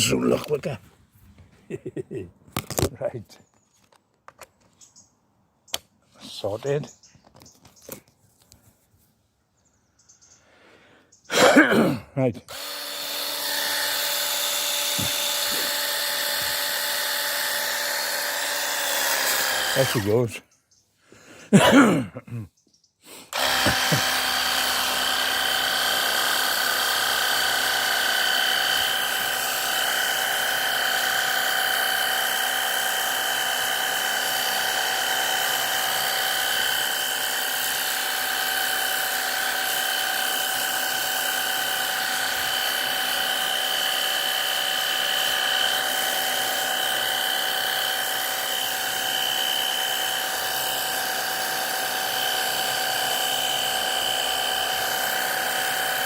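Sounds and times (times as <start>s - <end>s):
pressure washer whine and hiss: 12.5s - 20.2s, 23.3s - 56.0s.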